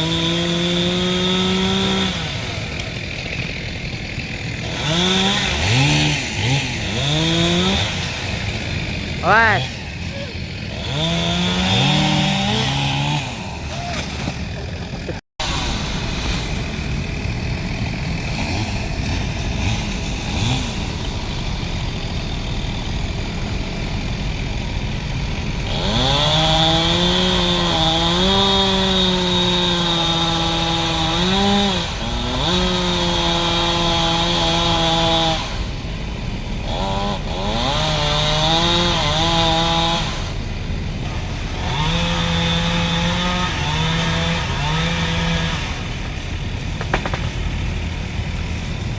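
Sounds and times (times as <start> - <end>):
chainsaw running at high revs: 0.0 - 48.9.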